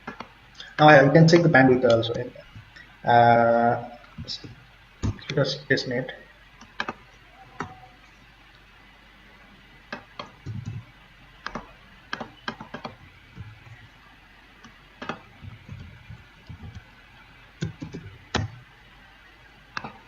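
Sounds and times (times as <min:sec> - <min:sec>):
typing on computer keyboard: 0:17.6 - 0:18.6.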